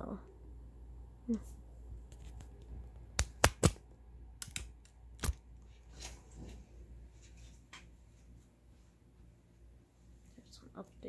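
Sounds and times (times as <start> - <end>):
sharp clicks: 4.4 - 5.4.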